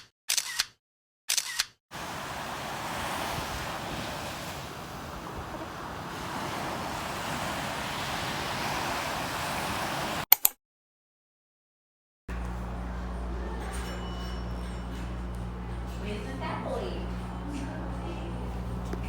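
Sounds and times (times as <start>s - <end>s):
sea waves washing on beach: 1.9s - 10.3s.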